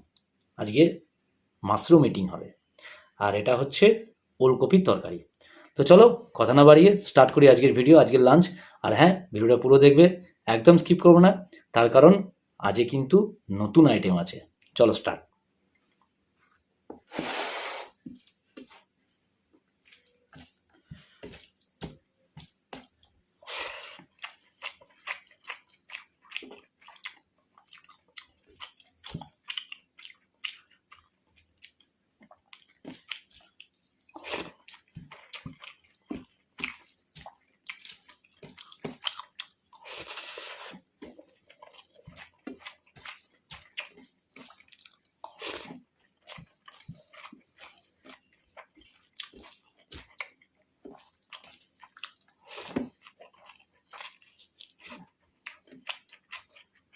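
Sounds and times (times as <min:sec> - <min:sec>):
squishy scraping eating noises: 0:15.9 - 0:31.9, 0:32.6 - 0:56.9
chewing and mouth smacks: 0:17.9 - 0:56.9.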